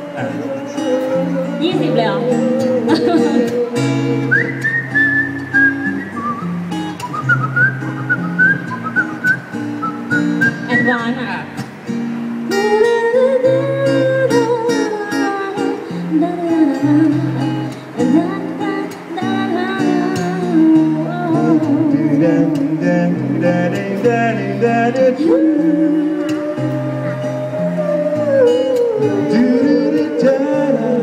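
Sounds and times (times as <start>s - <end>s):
live band guitars jamming: 0.0s - 31.0s.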